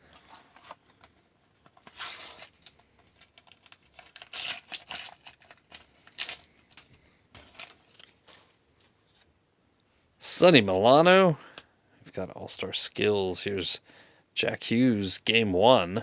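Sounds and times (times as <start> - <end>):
paper crinkling: 0.0 - 9.3
paper wrappers tearing: 1.6 - 8.6.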